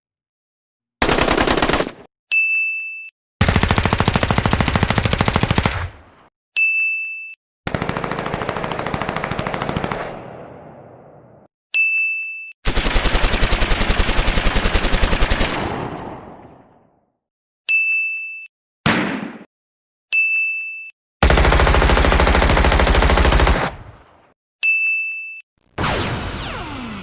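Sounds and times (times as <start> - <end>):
automatic gunfire bursts: 1.0 - 2.1, 3.4 - 5.9, 7.7 - 10.2, 12.7 - 15.8, 21.2 - 23.8.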